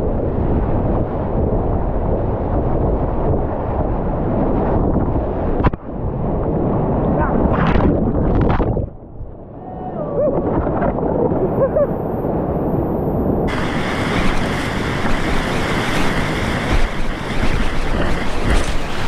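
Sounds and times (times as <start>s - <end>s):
rushing whitewater of rapids: 13.5s - 19.0s.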